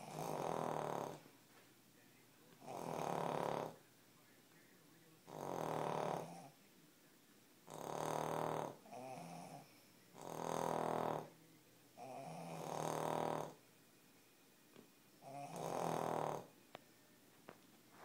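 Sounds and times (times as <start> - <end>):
dog snoring: 0.0 - 1.3, 2.5 - 3.8, 5.2 - 6.6, 7.6 - 11.4, 12.0 - 13.6, 15.2 - 16.6.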